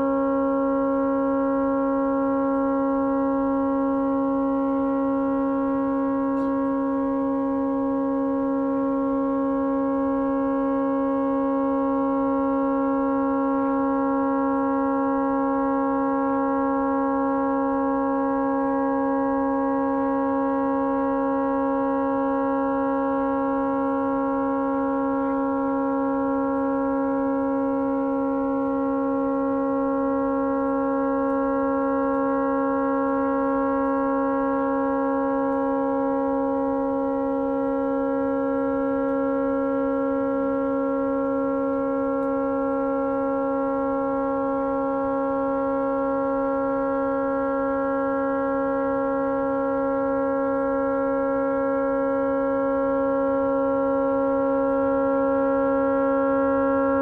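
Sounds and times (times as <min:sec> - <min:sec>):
tugboat horn blast: 0:04.1 - 0:12.3, 0:13.3 - 0:40.4.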